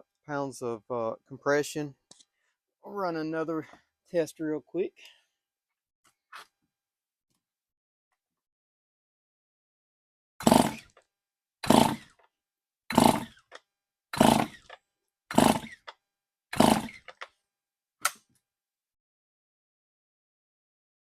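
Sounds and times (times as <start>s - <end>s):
chainsaw recoil starter pulls: 10.4s - 11.0s, 11.6s - 12.2s, 12.9s - 13.6s, 14.2s - 15.9s, 16.5s - 17.3s
engine cranking without firing: 10.4s - 11.0s, 11.6s - 12.2s, 12.9s - 13.6s, 14.2s - 15.9s, 16.5s - 17.3s.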